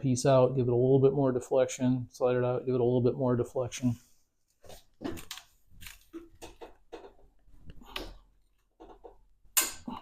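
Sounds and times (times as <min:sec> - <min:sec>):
metallic clicks and knocks: 0:06.2 - 0:09.9.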